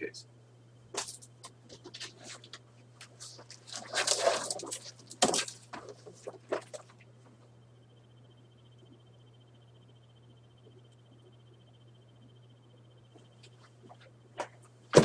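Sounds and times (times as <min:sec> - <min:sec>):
scraping rustle: 0:01.7 - 0:07.0.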